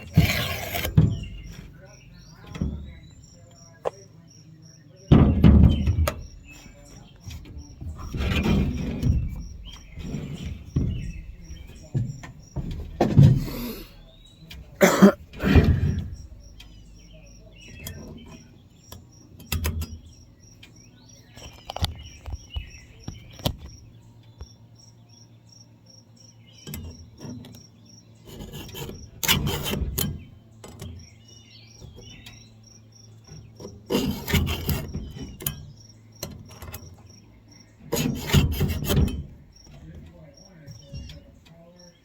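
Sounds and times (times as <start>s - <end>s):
file rasping on chainsaw chain: 0.0s - 1.4s, 28.2s - 30.0s, 33.6s - 35.4s, 37.8s - 39.2s
crickets chirping: 0.0s - 42.0s.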